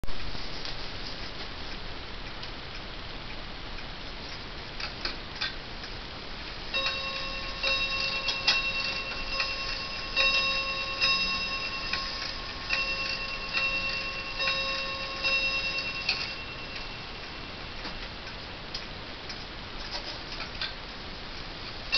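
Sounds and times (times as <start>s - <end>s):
clock ticking: 4.3s - 19.4s
clock chime tune: 6.7s - 17.9s.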